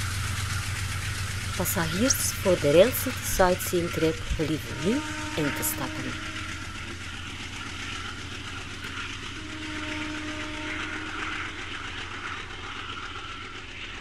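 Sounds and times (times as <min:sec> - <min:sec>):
train rumbling on rails: 0:00.0 - 0:14.0.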